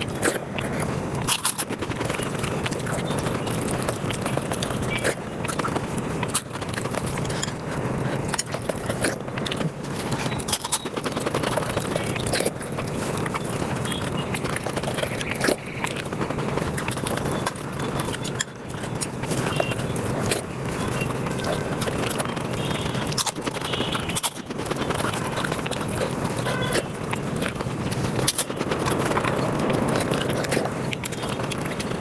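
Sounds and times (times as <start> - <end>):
rapid chewing and mouth smacks: 0.0 - 32.0.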